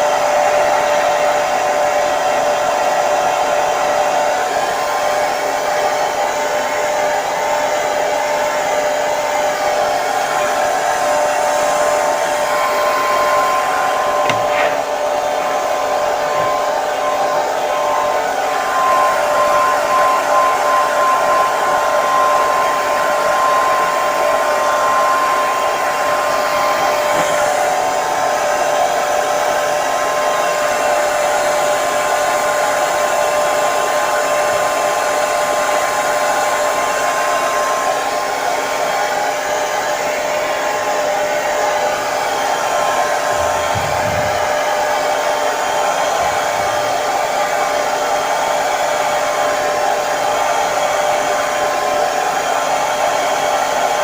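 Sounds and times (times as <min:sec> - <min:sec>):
hair dryer running: 0:00.0 - 0:54.0.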